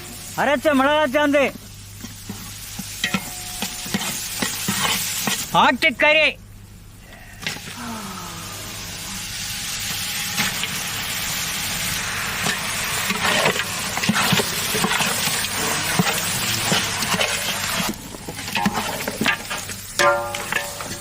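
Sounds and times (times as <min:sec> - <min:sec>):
meat sizzling in hot oil: 0:00.0 - 0:05.7, 0:07.4 - 0:21.0
ladle knocking and scraping pot: 0:12.4 - 0:21.0.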